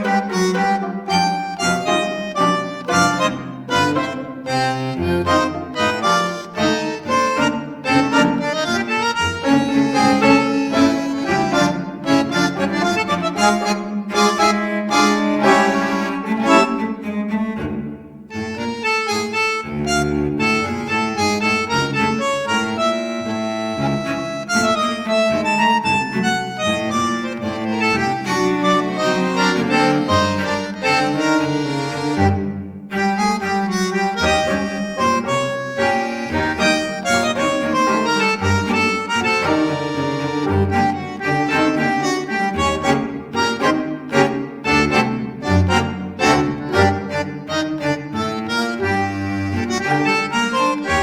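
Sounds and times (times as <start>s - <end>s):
reedy instrument melody: 0.0s - 51.0s.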